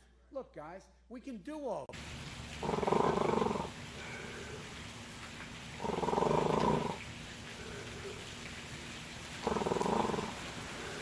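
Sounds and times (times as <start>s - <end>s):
low steady hiss: 0.0s - 11.0s
rough growling roars: 2.6s - 3.8s, 5.8s - 7.0s, 9.4s - 11.0s.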